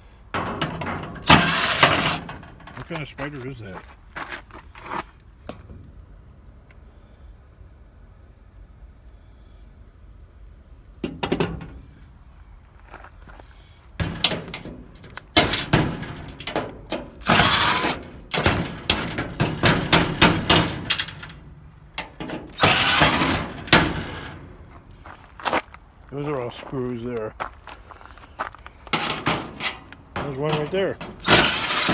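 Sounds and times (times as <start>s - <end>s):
metal scraping and rattling: 0.0s - 3.2s, 11.0s - 12.1s, 14.0s - 25.6s, 28.0s - 31.9s
metal parts clanking: 0.4s - 3.0s, 11.0s - 11.9s, 14.0s - 25.2s, 28.8s - 31.9s.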